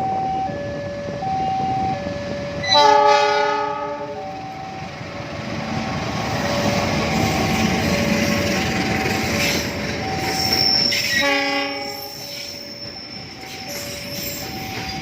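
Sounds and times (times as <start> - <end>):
train rumbling past: 0.0 - 15.0
two-tone crossing warning bell: 0.0 - 15.0
train horn blast: 2.6 - 4.2, 11.0 - 12.5
train wheel squeal: 6.4 - 15.0.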